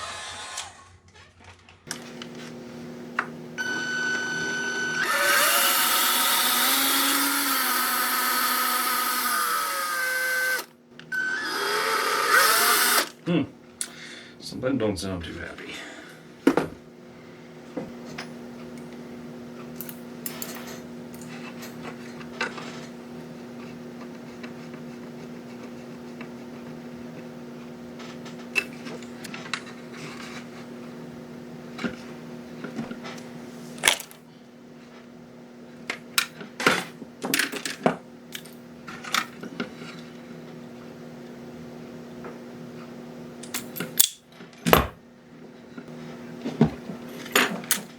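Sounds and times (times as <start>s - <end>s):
small motor humming: 3.6s - 13.2s.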